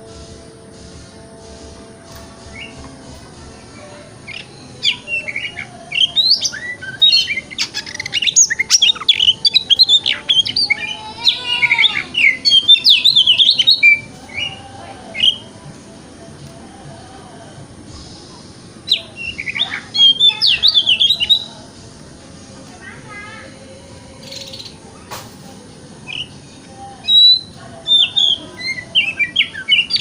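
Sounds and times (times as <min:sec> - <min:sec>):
bird singing whistles and chirps: 0:04.3 - 0:15.5, 0:18.8 - 0:21.5, 0:26.0 - 0:26.4, 0:27.0 - 0:30.0.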